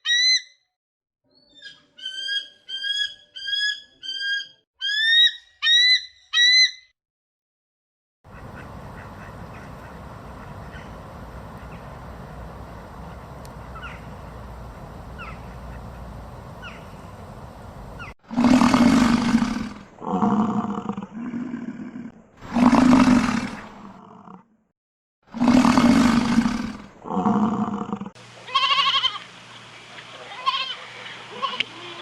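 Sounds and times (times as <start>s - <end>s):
faint bird chirps: 8.3s - 18.2s
outdoor ambience: 8.3s - 24.4s, 25.3s - 32.0s
large animal roaring: 18.3s - 24.4s, 25.3s - 28.1s.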